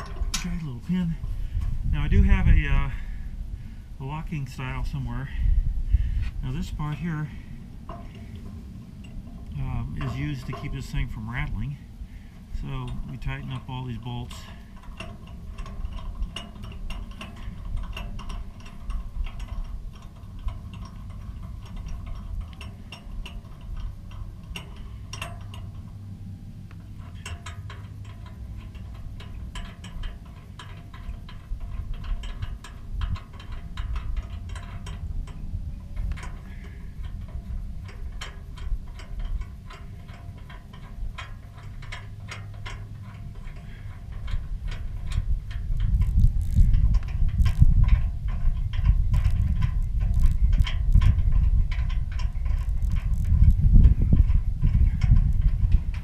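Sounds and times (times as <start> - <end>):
ratchet wrench clicking: 12.8 - 26.1, 26.7 - 56.0.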